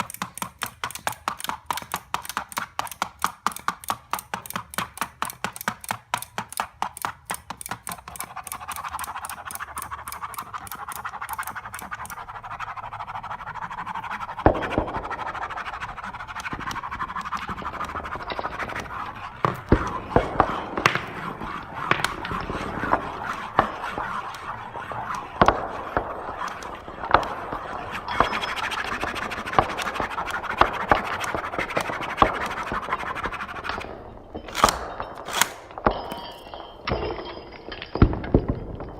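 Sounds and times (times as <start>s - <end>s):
fast even clicking: 0.0s - 12.7s.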